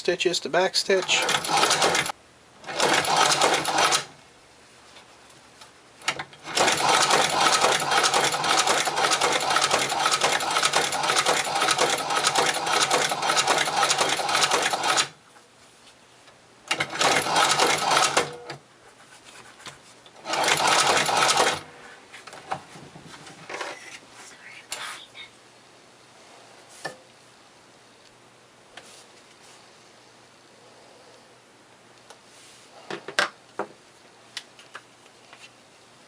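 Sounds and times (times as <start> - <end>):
sewing machine stitching leather: 0.9 - 4.1, 6.0 - 15.2, 16.7 - 18.6, 20.2 - 21.7.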